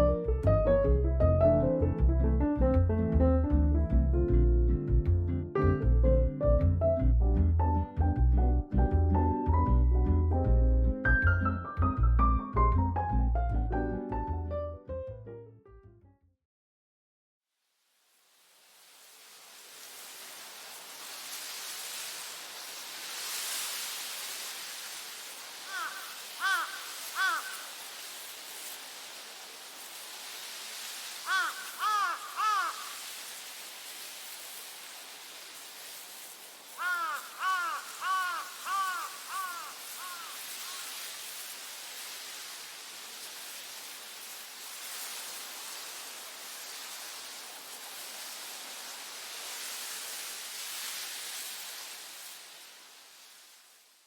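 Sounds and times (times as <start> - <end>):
steady outdoor hiss: 0.0 - 14.8, 17.6 - 54.0
crows cawing: 25.6 - 28.0, 31.2 - 33.2, 36.8 - 41.1.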